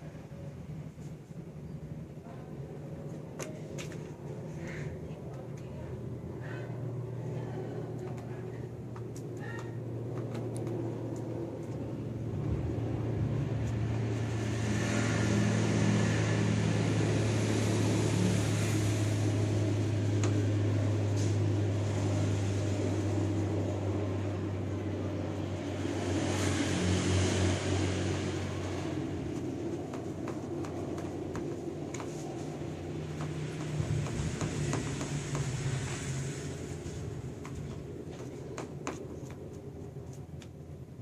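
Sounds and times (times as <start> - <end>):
low machine hum: 0.0 - 41.0
rushing noise: 12.0 - 39.9.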